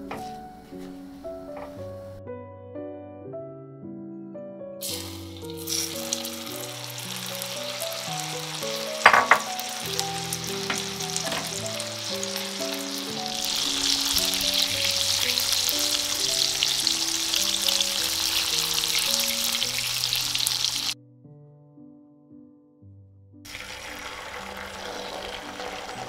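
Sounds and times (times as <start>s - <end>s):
food sizzling in a pan: 4.8s - 21.0s, 23.5s - 26.0s.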